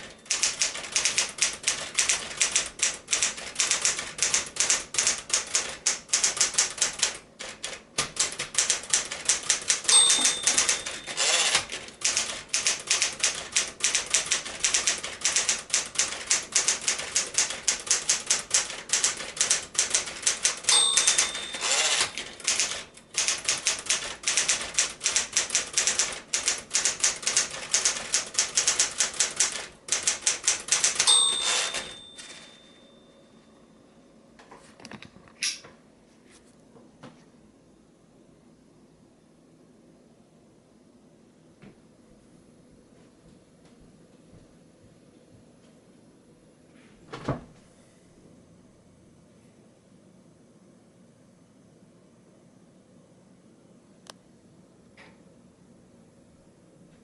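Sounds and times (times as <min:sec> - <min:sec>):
typewriter margin bell: 0:00.0 - 0:07.2, 0:08.2 - 0:33.3
typewriter typing: 0:00.0 - 0:32.6
typewriter carriage return: 0:00.0 - 0:32.8.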